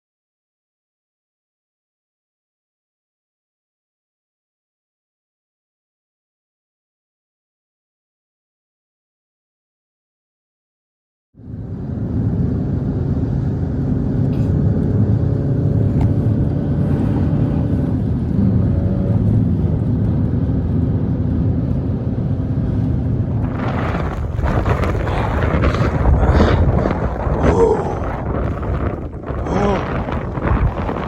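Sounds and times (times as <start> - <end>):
vehicle engine droning: 11.4 - 31.0
loud rushing noise: 23.1 - 31.0.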